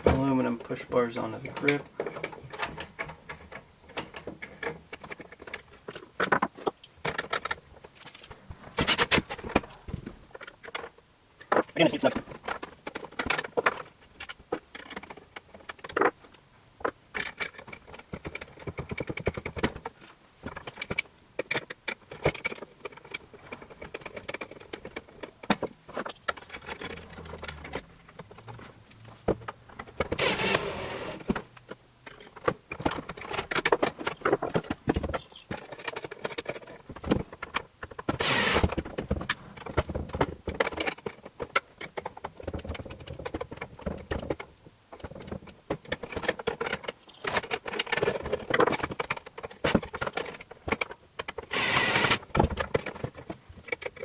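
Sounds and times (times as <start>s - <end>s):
small metal parts clinking: 35.1s - 36.7s, 46.8s - 47.5s.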